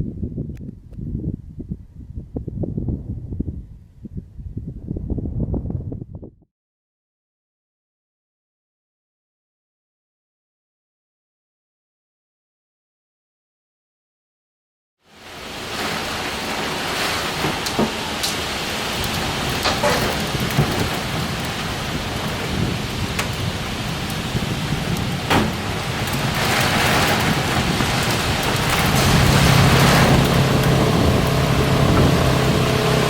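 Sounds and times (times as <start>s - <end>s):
rain falling: 15.1s - 33.0s
low hum: 28.6s - 33.0s.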